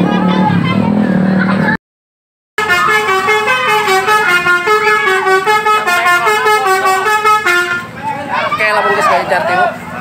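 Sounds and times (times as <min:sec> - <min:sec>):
bus multi-tone air horn melody: 0:02.6 - 0:08.0.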